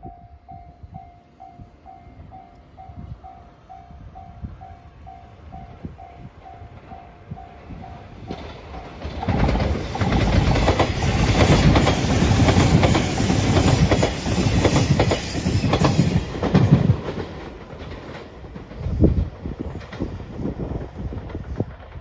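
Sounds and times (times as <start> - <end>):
train wheels clacking over rail joints: 7.9 - 22.0.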